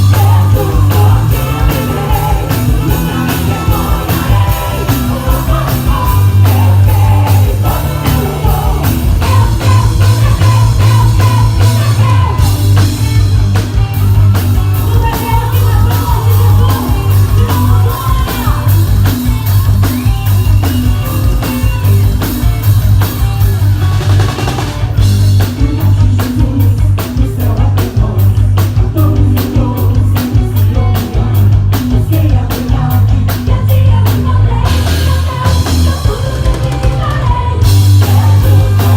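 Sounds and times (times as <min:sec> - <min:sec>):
person singing: 0:00.0 - 0:13.1, 0:14.6 - 0:19.3, 0:25.4 - 0:38.9
rock band playing: 0:00.0 - 0:38.9.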